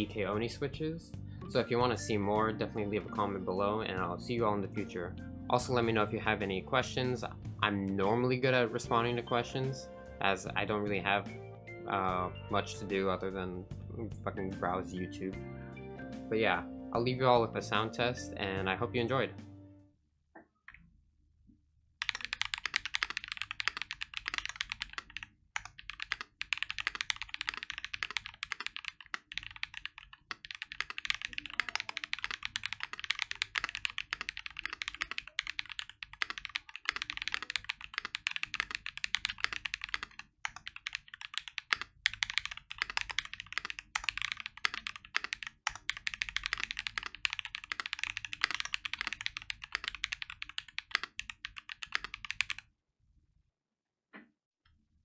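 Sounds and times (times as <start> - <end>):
fast typing on mechanical keyboard: 22.0 - 52.6.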